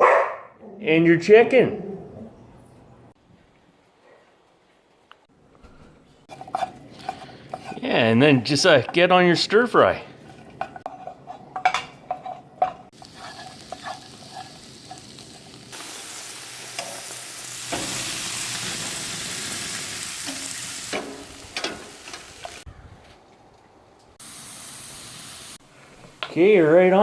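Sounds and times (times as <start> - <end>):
utensil scraping a pan: 5.8 - 15.4
stir fry sizzling in a pan: 12.9 - 22.7, 24.2 - 26.4.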